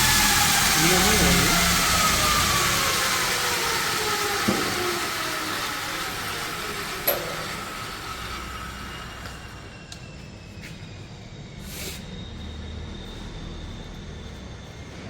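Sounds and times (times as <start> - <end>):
belt grinder winding down: 0.0 - 9.8.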